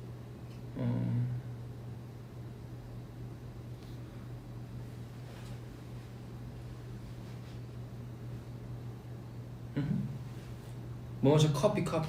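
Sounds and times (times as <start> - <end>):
low background hum: 0.0 - 12.0
man humming: 0.7 - 1.6, 9.7 - 10.2.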